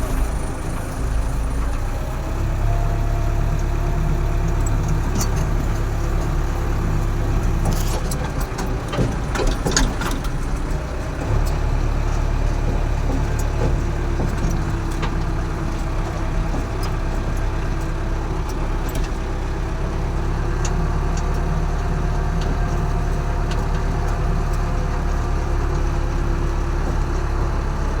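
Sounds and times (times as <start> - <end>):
diesel engine running: 0.0 - 28.0
sharp clanks and knocks: 7.6 - 17.4.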